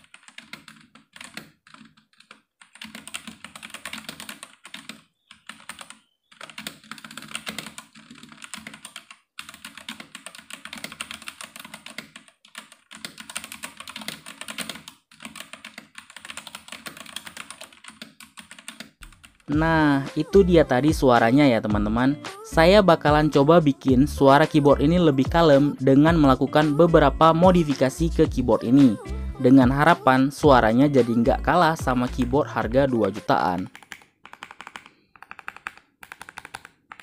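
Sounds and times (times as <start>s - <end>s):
mechanical keyboard typing: 0.0s - 19.6s, 31.0s - 37.0s.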